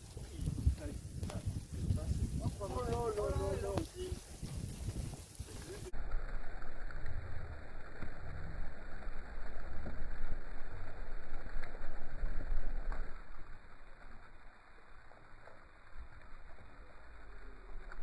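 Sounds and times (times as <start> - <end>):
steady rain hiss: 0.0 - 18.0.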